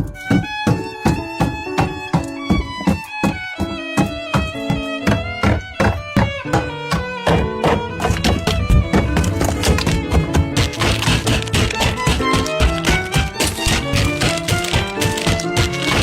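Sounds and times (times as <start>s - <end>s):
violin melody: 0.0s - 16.0s
percussive beat: 0.7s - 16.0s.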